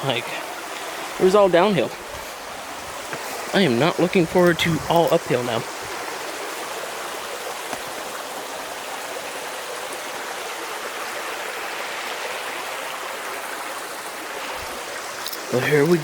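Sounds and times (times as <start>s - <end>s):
waterfall rushing: 0.0s - 16.0s.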